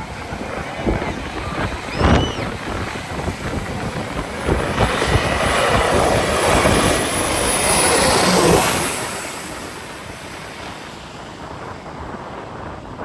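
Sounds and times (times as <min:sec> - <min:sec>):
faint high whine: 0:00.0 - 0:12.5
aircraft engine noise: 0:00.0 - 0:13.0.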